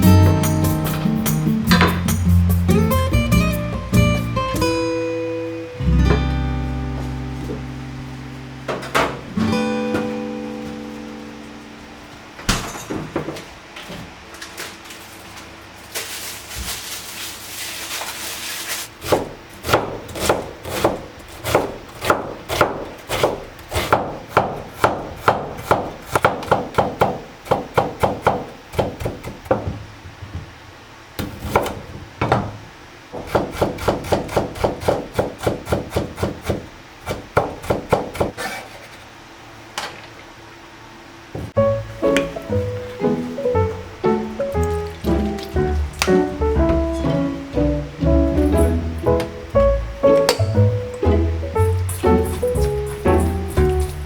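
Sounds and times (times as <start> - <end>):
knife chopping on wooden board: 19.0 - 29.8, 33.2 - 38.6.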